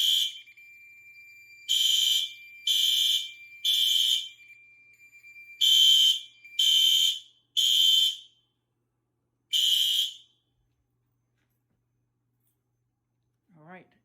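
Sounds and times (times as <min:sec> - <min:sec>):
faint steady high tone: 0:00.0 - 0:07.5
fire alarm horns blasting: 0:00.0 - 0:08.4, 0:09.5 - 0:10.4.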